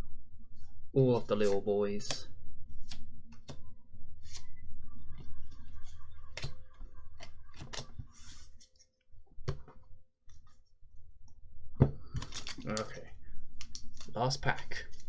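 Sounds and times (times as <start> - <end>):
cards clicking and tapping: 1.2 - 2.3, 7.2 - 8.1.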